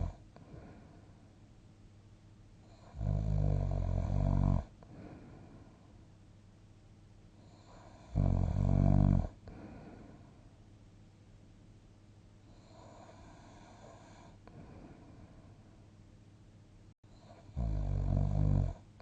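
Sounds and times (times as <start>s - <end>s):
soft breathing: 0.0s - 1.4s, 4.8s - 6.0s, 9.4s - 10.6s, 12.4s - 15.9s
person snoring: 2.7s - 5.2s, 7.5s - 10.2s, 17.3s - 18.8s.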